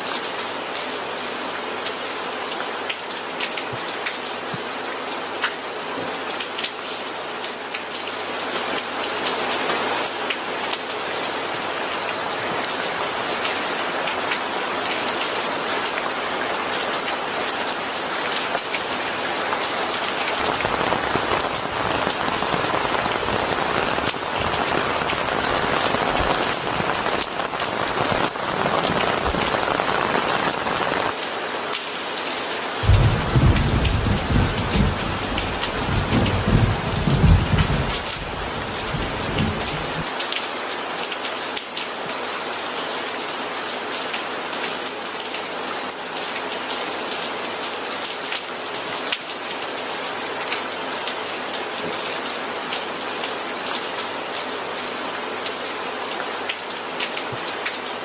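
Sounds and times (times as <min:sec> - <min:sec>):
rain falling: 0:00.0 - 0:58.0
thunder rumbling: 0:20.2 - 0:31.1, 0:32.8 - 0:40.1.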